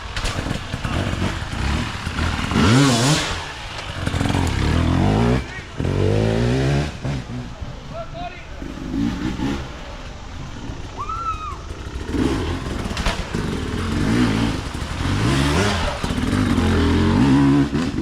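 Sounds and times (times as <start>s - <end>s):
dirt bike engines revving: 0.0s - 18.0s.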